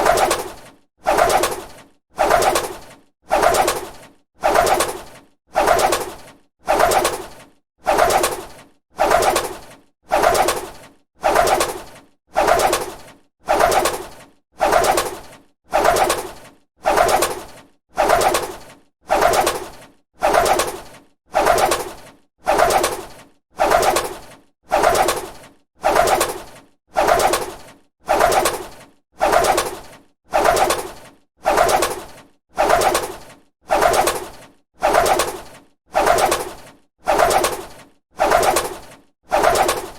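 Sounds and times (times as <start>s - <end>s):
bird wings flapping: 0.0s - 39.9s.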